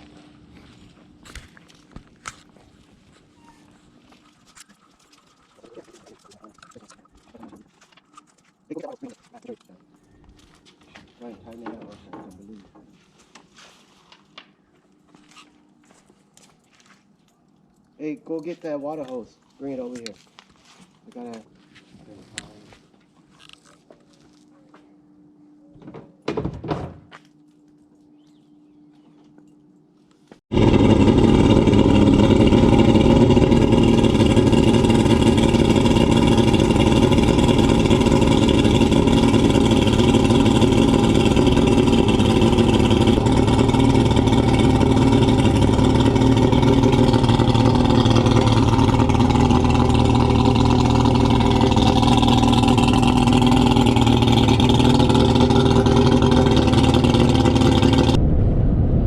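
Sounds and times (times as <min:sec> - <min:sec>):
boat engine running: 0:30.5 - 0:58.2.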